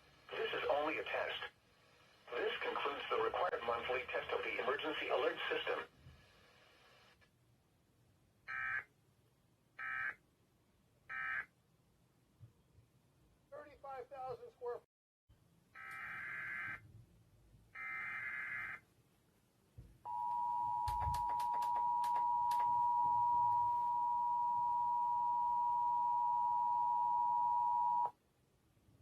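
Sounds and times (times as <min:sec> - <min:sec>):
clicks: 0:20.2 - 0:22.9.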